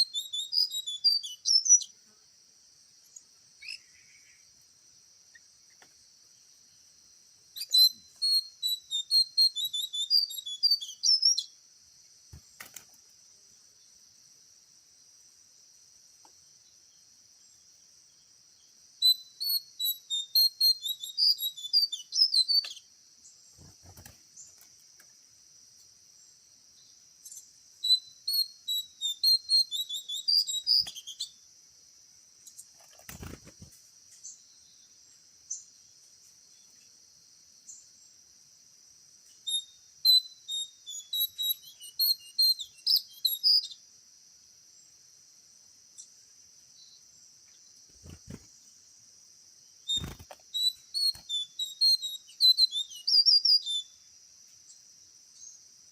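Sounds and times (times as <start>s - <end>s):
insects droning: 0.0s - 55.9s
songbird chirping: 0.0s - 55.9s.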